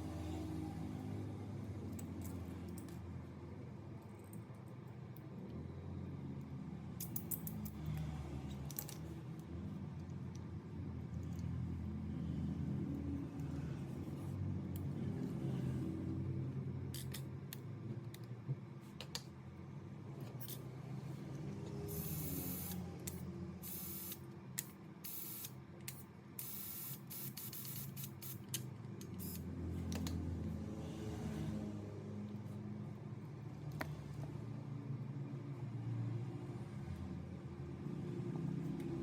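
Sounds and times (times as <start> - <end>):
hissing spray bursts: 26.4 - 28.4.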